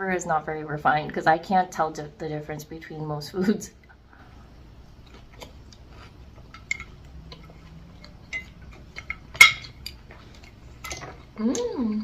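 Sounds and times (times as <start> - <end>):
faint low hum: 0.0 - 12.0
utensils clicking against dishes: 6.4 - 11.3.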